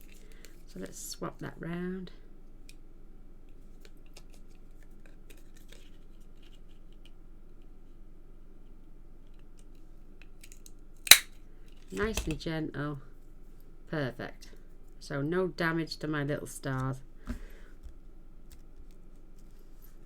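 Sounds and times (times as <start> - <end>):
handling card and foil: 3.6 - 7.2, 10.4 - 12.4.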